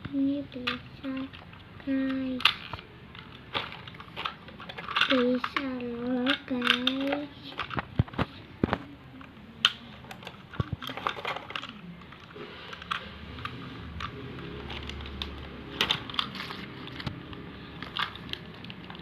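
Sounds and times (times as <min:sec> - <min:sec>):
plastic toy clicks and taps: 0:00.6 - 0:11.7.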